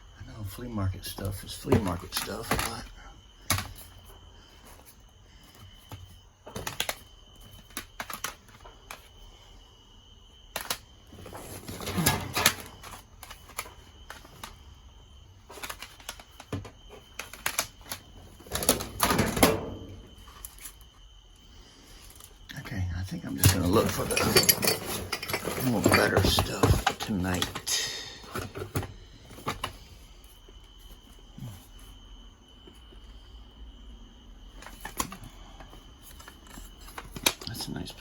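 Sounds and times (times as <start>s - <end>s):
hard objects clattering: 23.3s - 29.8s.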